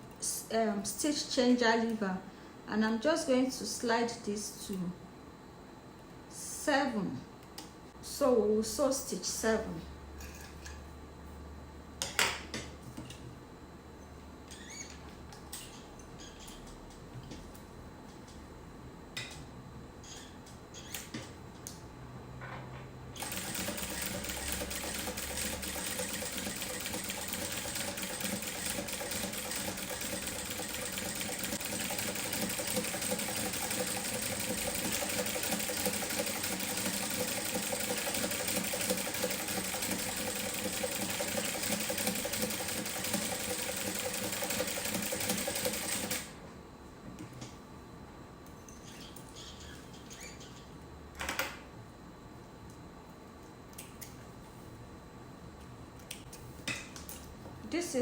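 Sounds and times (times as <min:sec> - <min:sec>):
sewing machine running: 0:23.2 - 0:46.3.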